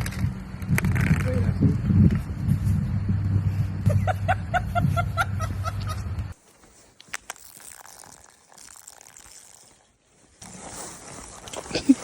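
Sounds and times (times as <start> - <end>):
steady low hum: 0.0 - 6.4.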